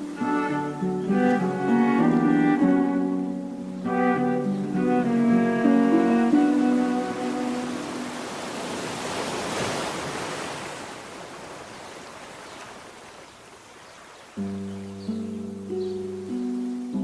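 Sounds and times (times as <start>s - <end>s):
music: 0.0s - 8.2s, 14.4s - 17.0s
ocean wave breaking: 0.0s - 14.4s.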